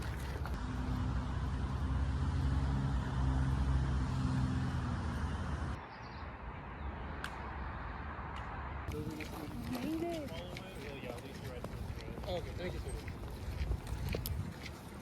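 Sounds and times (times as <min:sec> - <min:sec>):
vehicle engine humming: 0:00.0 - 0:05.8.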